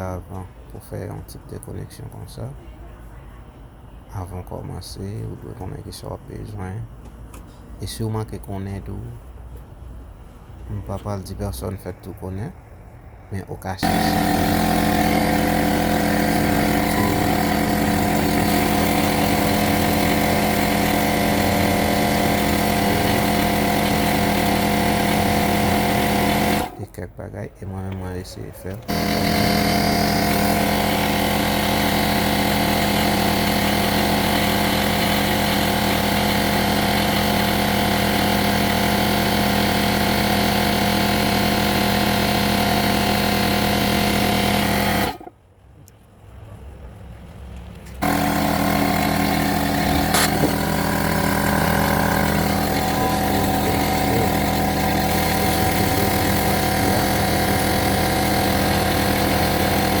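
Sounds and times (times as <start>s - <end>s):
air compressor humming: 13.8s - 27.0s, 27.7s - 45.4s, 48.0s - 60.0s.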